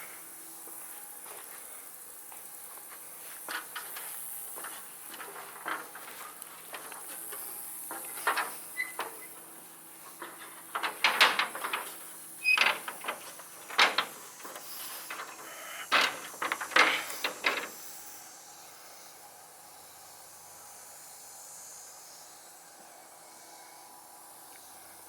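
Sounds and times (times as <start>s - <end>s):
knocks and clatter: 7.9s - 9.2s, 10.2s - 17.8s.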